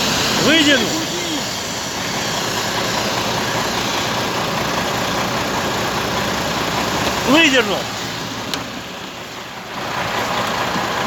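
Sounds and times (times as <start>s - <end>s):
noisy hiss: 0.0s - 5.8s
truck engine idling: 0.0s - 11.0s.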